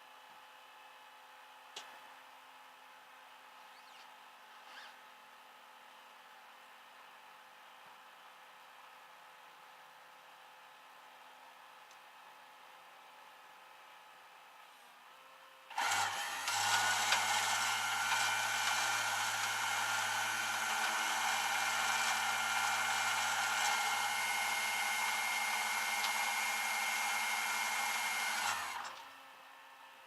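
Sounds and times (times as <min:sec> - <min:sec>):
motor whining: 0:15.7 - 0:29.0.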